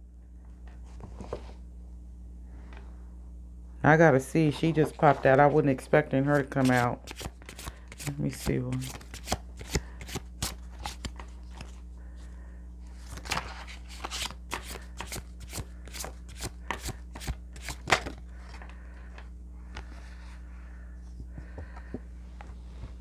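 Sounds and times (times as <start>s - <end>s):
low electrical hum: 0.0s - 23.0s
cards being shuffled: 6.3s - 11.9s, 12.9s - 18.6s.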